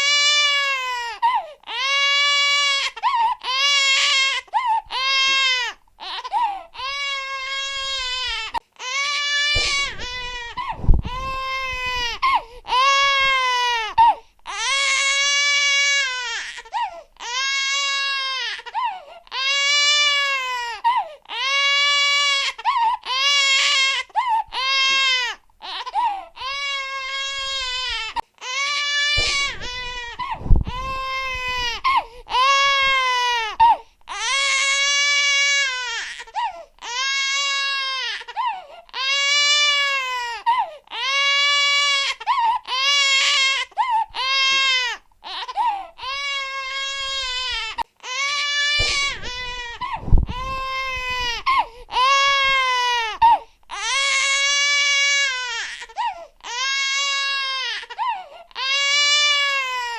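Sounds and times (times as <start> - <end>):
infant crying: 0.0 - 59.9
infant gasping for breath: 1.2 - 1.7, 6.2 - 6.8, 9.6 - 12.8, 16.7 - 17.2, 18.7 - 19.3, 20.8 - 21.3, 25.9 - 26.3, 29.2 - 32.4, 36.3 - 36.8, 38.3 - 39.0, 40.5 - 40.9, 45.5 - 46.0, 48.8 - 50.7, 51.4 - 52.0, 56.0 - 56.4
low bump: 9.6 - 13.4, 29.2 - 33.0, 48.8 - 51.7.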